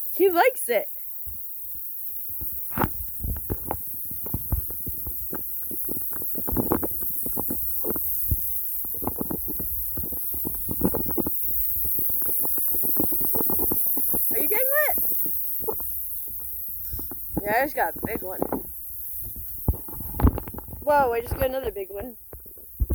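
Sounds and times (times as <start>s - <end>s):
sprinkler water splashes: 0.0s - 0.9s, 2.4s - 22.9s
steady high hiss: 0.0s - 22.9s.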